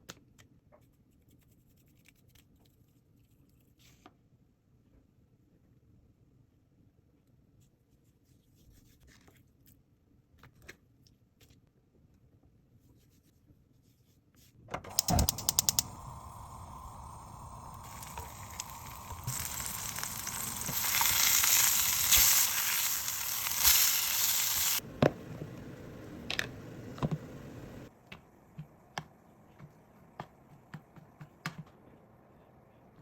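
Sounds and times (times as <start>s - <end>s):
quick clicks: 14.9s - 19.4s
food sizzling in a frying pan: 15.5s - 24.8s.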